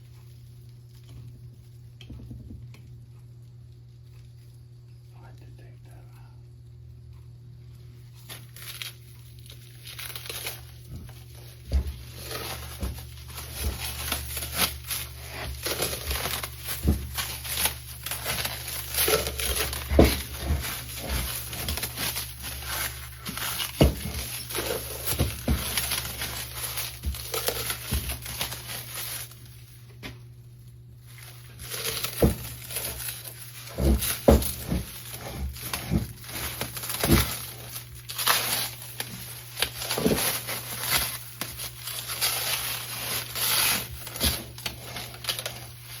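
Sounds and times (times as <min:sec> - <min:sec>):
wrapping crumpled and torn: 0:08.0 - 0:29.8, 0:31.0 - 0:46.0.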